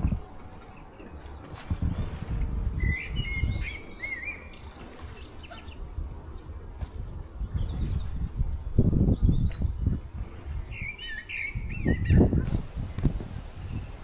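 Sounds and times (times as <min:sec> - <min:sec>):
steady low rumble: 0:00.0 - 0:11.0, 0:11.6 - 0:14.0
songbird warbling: 0:02.7 - 0:05.9, 0:10.6 - 0:13.1.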